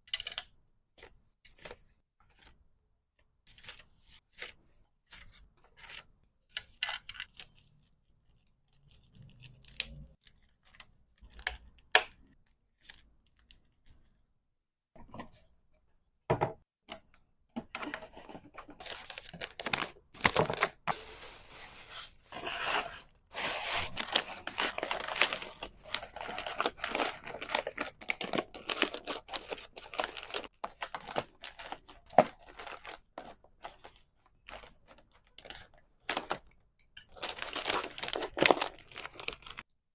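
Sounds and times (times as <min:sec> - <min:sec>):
packaging tearing and crinkling: 0:23.4 - 0:33.0, 0:37.2 - 0:39.6.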